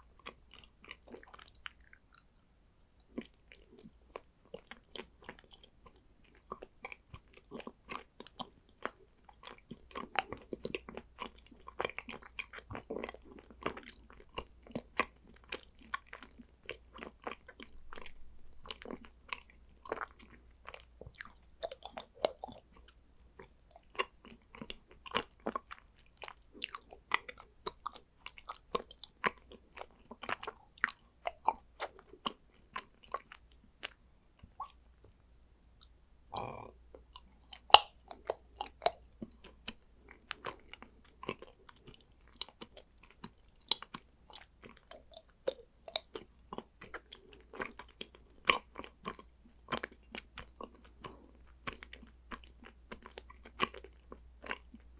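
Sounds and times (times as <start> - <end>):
person chewing chocolate: 0.0 - 54.9.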